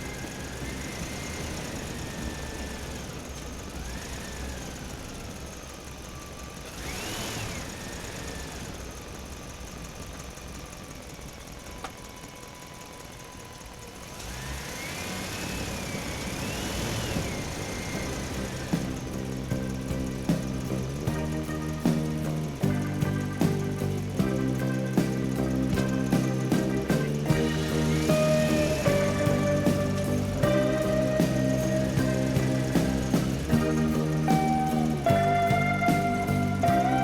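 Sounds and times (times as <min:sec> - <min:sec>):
engine rumble: 0:00.0 - 0:37.0
rising and falling whistle tones: 0:27.3 - 0:37.0.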